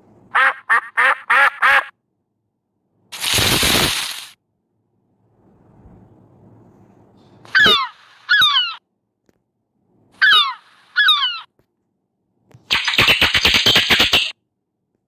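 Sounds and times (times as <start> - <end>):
bird calling: 7.5 - 8.8, 10.2 - 11.5.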